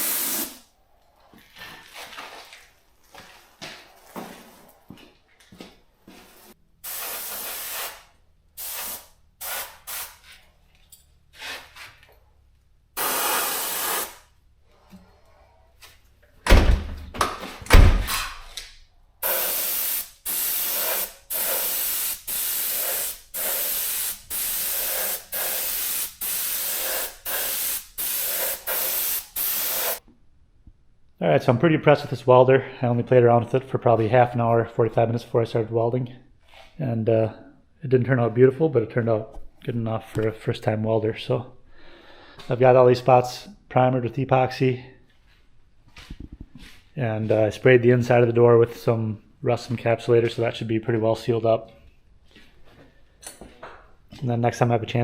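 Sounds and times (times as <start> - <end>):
spray coating hissing bursts: 0.0 - 0.6, 6.8 - 10.2, 13.0 - 14.3, 19.2 - 30.0.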